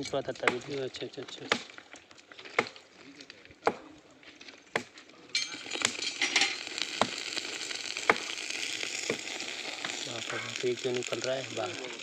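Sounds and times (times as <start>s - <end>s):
hissing crackle of welding: 5.4s - 12.0s.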